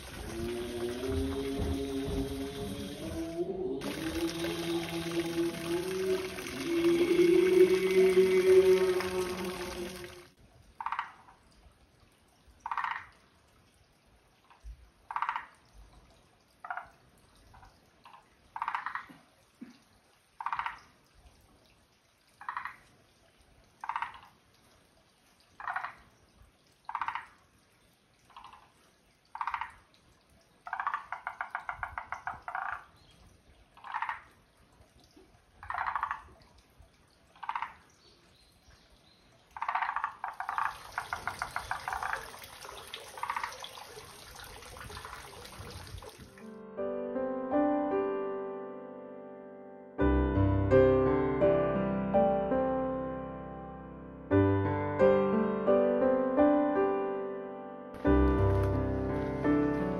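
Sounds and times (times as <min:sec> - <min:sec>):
frogs calling: 0:03.8 - 0:11.2, 0:12.6 - 0:13.1, 0:15.1 - 0:15.5, 0:18.6 - 0:19.1, 0:20.4 - 0:20.8, 0:22.4 - 0:22.8, 0:23.8 - 0:24.3, 0:25.6 - 0:26.0, 0:26.9 - 0:27.4, 0:29.3 - 0:29.8, 0:30.7 - 0:33.0, 0:33.8 - 0:34.3, 0:35.6 - 0:36.3, 0:37.4 - 0:38.0, 0:39.6 - 0:42.5, 0:43.1 - 0:43.7
frog rattling trill: 0:39.6 - 0:42.2.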